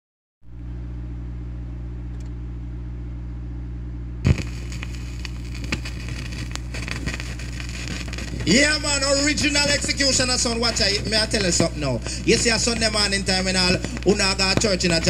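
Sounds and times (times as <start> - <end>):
electrical hum: 0.5 - 15.0
record surface noise crackle: 4.2 - 15.0.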